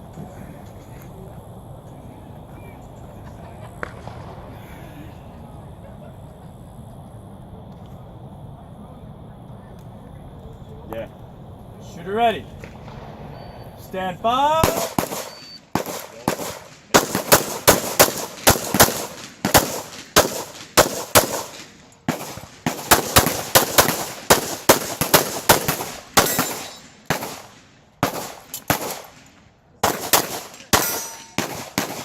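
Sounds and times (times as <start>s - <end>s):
pistol shots with echo: 3.6s - 4.9s, 14.5s - 32.0s.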